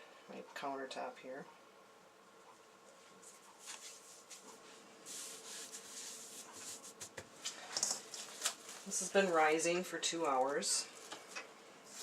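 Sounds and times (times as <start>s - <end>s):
hand rubbing flour on countertop: 3.2s - 7.2s.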